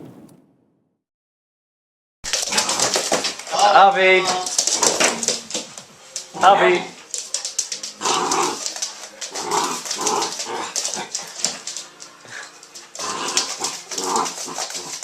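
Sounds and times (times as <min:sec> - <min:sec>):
fast crackle of clicks: 0:07.0 - 0:15.0.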